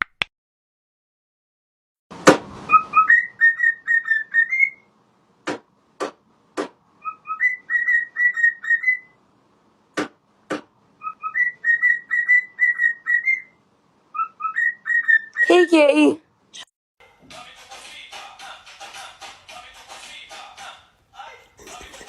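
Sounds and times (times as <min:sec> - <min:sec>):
whistled tune: 0:02.7 - 0:04.8.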